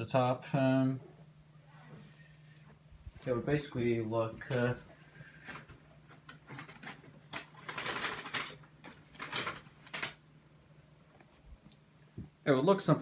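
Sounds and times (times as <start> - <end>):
low electrical hum: 0.0 - 13.0
object rustling and clattering: 4.2 - 10.2.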